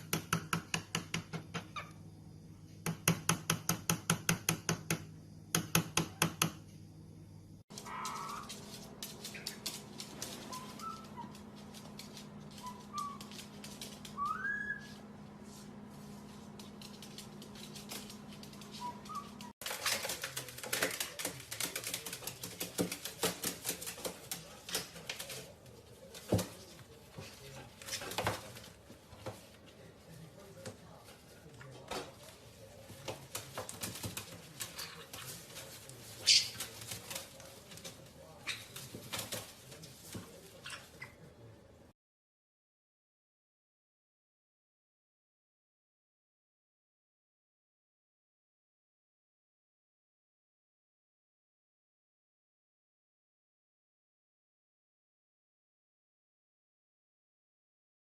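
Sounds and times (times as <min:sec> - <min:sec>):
high parrot call: 0:07.8 - 0:08.5
parrot whistling: 0:10.5 - 0:11.3, 0:14.2 - 0:14.9.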